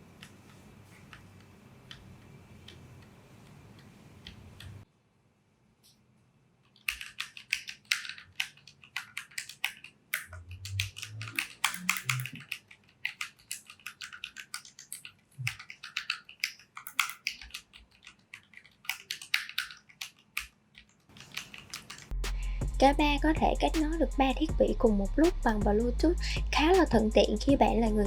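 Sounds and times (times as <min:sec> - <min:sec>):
mechanical keyboard typing: 0:06.7 - 0:22.2.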